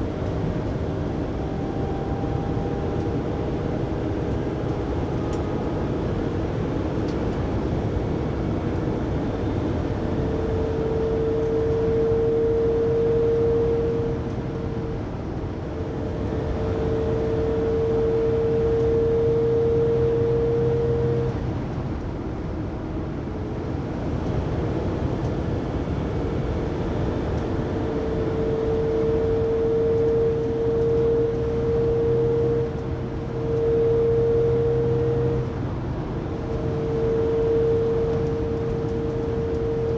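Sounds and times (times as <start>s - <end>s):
road and engine noise: 0.0s - 39.9s
high whining tone: 27.7s - 39.9s.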